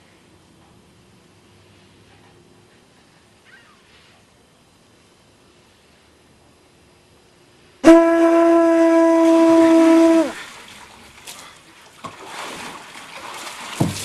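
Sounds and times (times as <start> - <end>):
conch shell horn note: 7.8 - 10.4.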